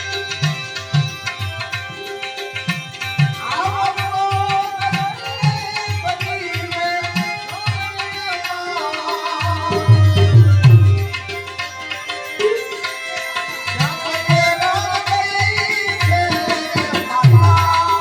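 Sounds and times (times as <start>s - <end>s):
hand drum beating: 9.7s - 11.5s.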